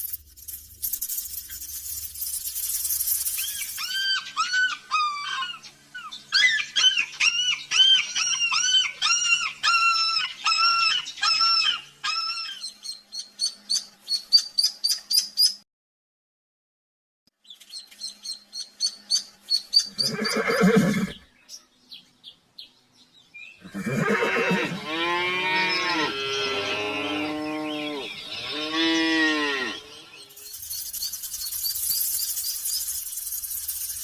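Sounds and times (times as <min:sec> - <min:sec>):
quick high chirps: 0:00.0 - 0:04.1, 0:30.4 - 0:34.0
farm animal calling: 0:03.5 - 0:12.8, 0:19.2 - 0:21.3, 0:23.6 - 0:30.4.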